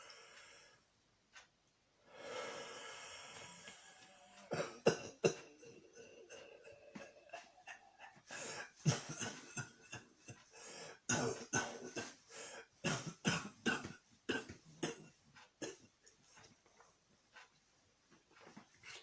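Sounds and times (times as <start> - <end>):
man coughing: 4.5 - 10.4, 11.1 - 12.2, 12.9 - 15.8.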